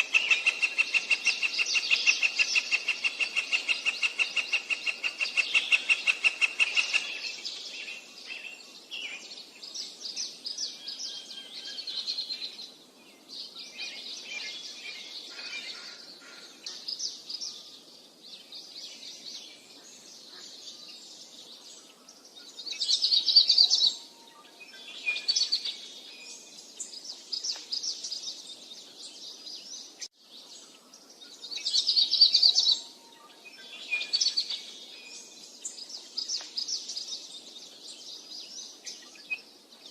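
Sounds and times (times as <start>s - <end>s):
rapid pulsed bird call: 0.0s - 9.2s
songbirds twittering: 0.0s - 39.9s.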